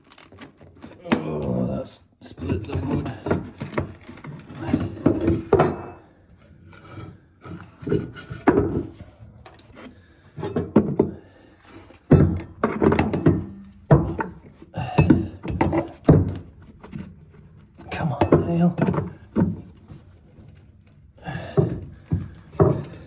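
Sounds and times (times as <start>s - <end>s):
wood scraping: 2.3s - 14.7s
wood knocking and thunking: 2.4s - 6.1s, 7.4s - 9.2s, 10.3s - 11.3s, 12.0s - 23.0s.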